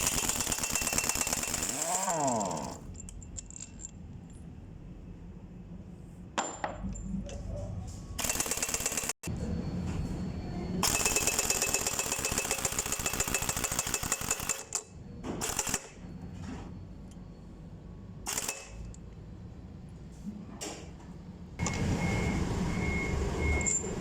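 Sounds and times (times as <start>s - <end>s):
pneumatic impact wrench hammering: 0.0s - 2.9s, 18.2s - 18.8s.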